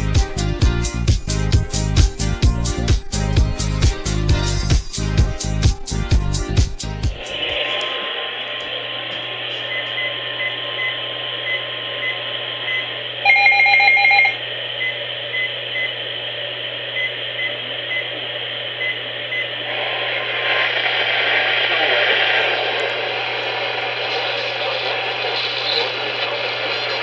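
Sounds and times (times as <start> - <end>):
low hum: 0.0 - 27.0
radio static hiss: 7.1 - 13.2, 14.4 - 27.0.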